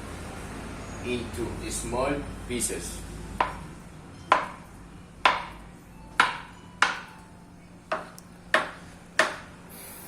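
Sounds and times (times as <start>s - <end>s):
knife chopping on board: 7.9s - 9.5s.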